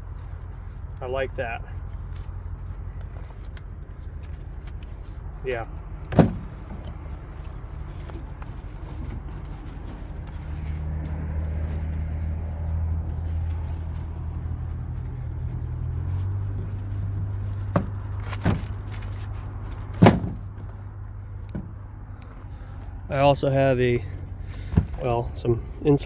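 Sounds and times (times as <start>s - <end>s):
vehicle engine idling: 0.0s - 26.0s.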